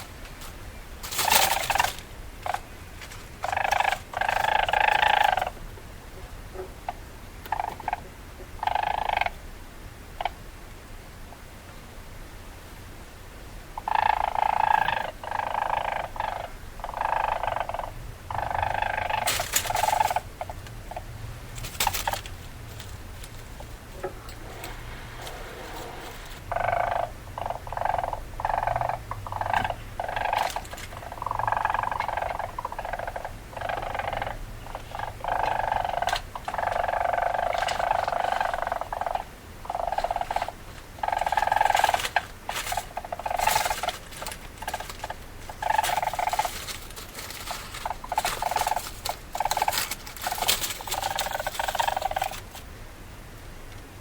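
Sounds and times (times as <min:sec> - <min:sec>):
weasel buzzy chattering: 0:01.0 - 0:02.7, 0:03.4 - 0:05.6, 0:13.8 - 0:52.6.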